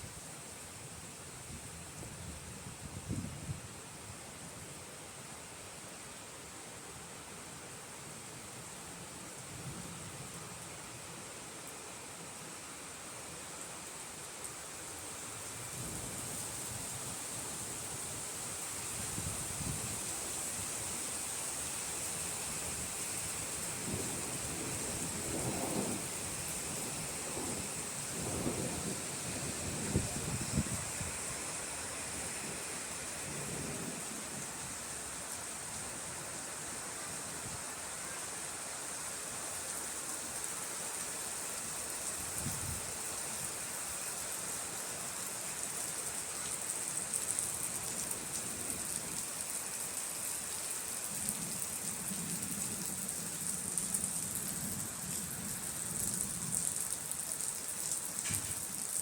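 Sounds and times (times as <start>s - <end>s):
steady rain: 0.0s - 59.0s
thunder rumbling: 23.9s - 26.1s, 27.2s - 30.8s.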